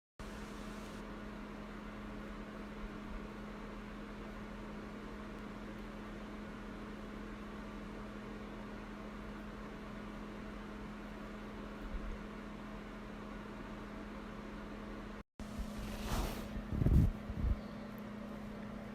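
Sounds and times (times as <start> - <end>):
mechanical hum: 0.2 - 18.9.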